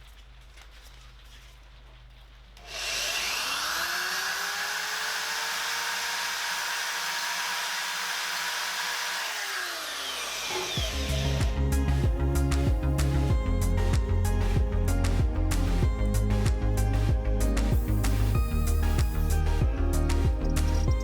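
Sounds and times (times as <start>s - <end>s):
electric drill spinning: 2.6s - 11.8s, 18.1s - 21.0s
background music: 10.8s - 21.0s.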